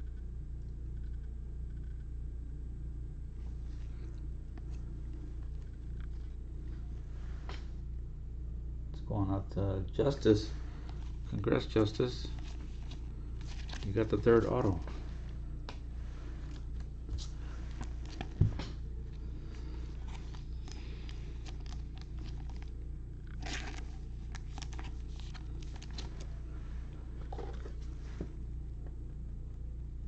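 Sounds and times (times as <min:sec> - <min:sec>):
steady low hum: 0:00.0 - 0:30.0
cards and wrappers rustling: 0:10.6 - 0:28.3.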